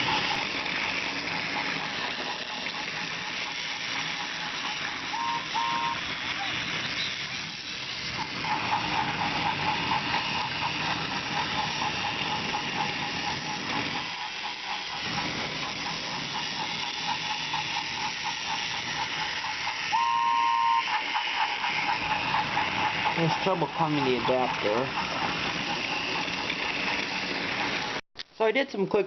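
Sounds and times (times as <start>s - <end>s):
toy train motor whirring: 0.0s - 28.0s
short steady tone: 5.1s - 6.0s, 19.9s - 21.0s.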